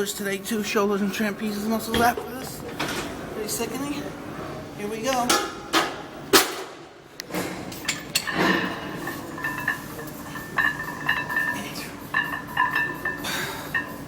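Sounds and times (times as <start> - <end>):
barbell and weight plates clanking: 7.3 - 14.0.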